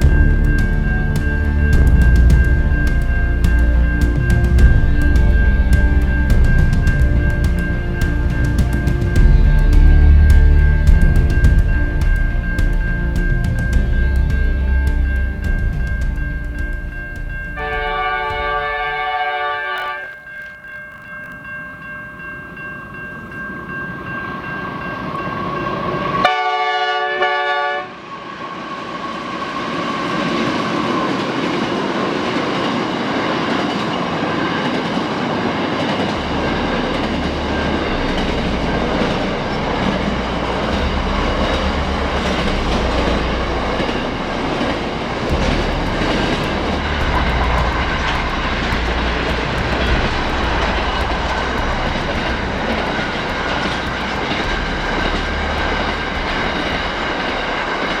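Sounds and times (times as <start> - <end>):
train rumbling past: 0.0 - 20.0, 21.8 - 58.0
train horn blast: 0.0 - 20.1, 26.2 - 28.0
wheels clacking over rail joints: 31.0 - 58.0.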